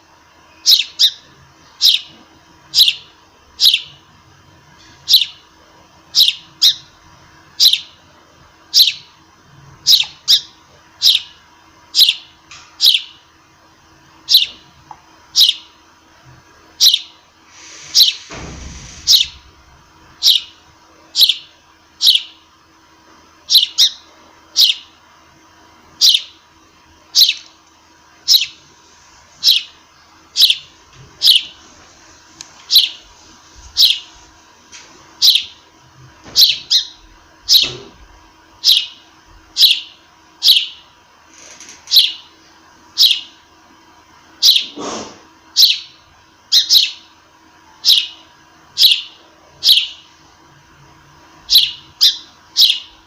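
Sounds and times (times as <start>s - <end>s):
sparrow chirping: 0.6s - 2.1s, 2.7s - 4.0s, 5.0s - 5.4s, 6.1s - 6.9s, 7.6s - 8.0s, 8.7s - 9.1s, 9.8s - 13.2s, 14.2s - 14.6s, 15.3s - 15.8s, 16.8s - 17.2s, 19.0s - 19.5s, 20.2s - 20.6s, 21.2s - 22.4s, 23.5s - 24.9s, 26.0s - 26.4s, 27.1s - 27.5s, 28.2s - 28.6s, 29.4s - 31.6s, 32.7s - 33.0s, 33.7s - 34.1s, 35.2s - 35.6s, 36.4s - 37.8s, 38.6s - 39.0s, 39.6s - 40.9s, 41.9s - 42.3s, 43.0s - 43.4s, 44.4s - 44.8s, 45.6s - 47.1s, 47.8s - 48.2s, 48.8s - 50.1s, 51.5s - 53.0s
brief rushing noise: 17.5s - 19.9s.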